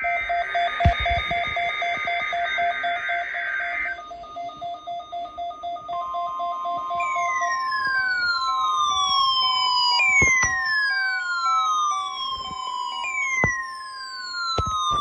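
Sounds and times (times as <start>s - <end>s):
falling electronic siren sweep: 0.0s - 15.0s
steady warning alarm tone: 0.0s - 15.0s.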